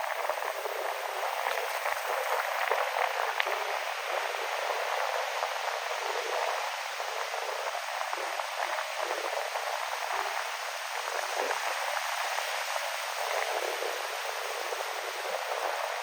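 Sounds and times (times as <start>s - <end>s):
wind: 0.0s - 16.0s.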